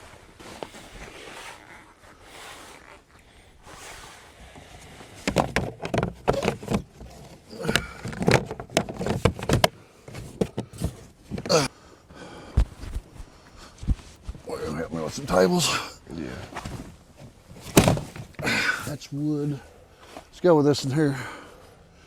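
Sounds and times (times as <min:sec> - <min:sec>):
knocks and clatter of gear handled: 0:04.6 - 0:11.7, 0:16.6 - 0:18.7.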